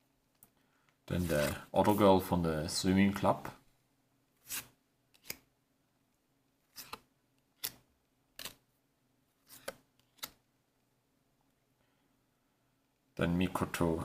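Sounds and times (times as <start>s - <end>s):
trading cards being handled: 1.1s - 2.0s, 6.7s - 7.8s, 8.4s - 8.6s, 9.4s - 10.4s.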